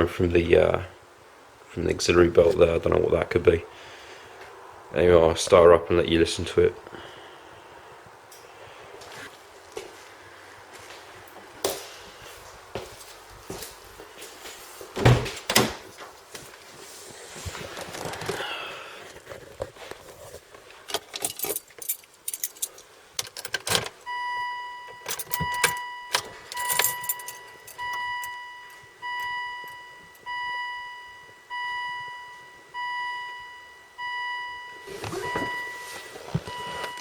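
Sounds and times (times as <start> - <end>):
keys jangling: 20.9 - 24.0, 25.0 - 28.4
car warning chime dinging: 23.4 - 37.0.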